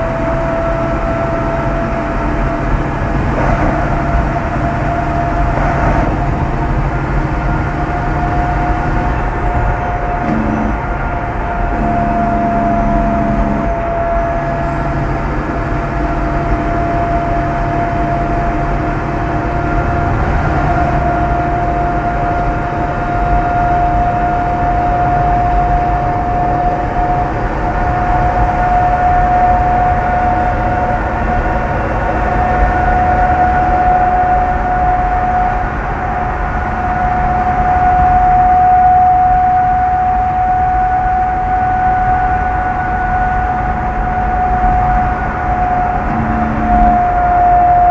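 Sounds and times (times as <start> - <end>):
diesel truck engine rumbling: 0.0 - 47.9
turbo whistling: 7.6 - 11.1, 11.7 - 18.7, 36.8 - 47.9.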